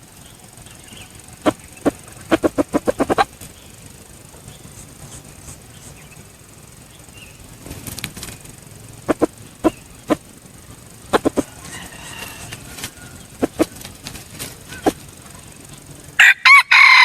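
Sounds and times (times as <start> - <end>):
junglefowl clucking: 0.8 - 3.6, 9.0 - 17.0.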